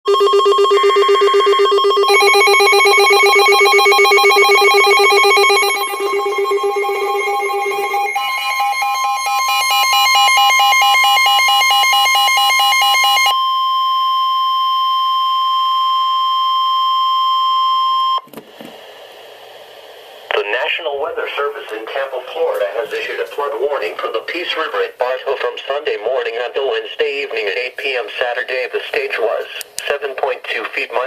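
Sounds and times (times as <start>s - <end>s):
steady warning alert tone: 0.1s - 13.3s
electronic alarm beeps: 0.1s - 18.3s.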